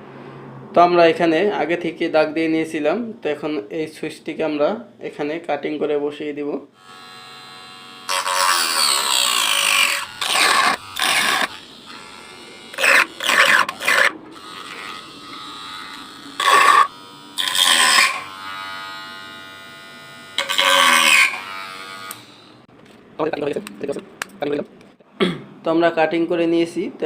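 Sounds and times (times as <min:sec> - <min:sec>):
power tool cutting plastic: 0:06.8 - 0:22.7.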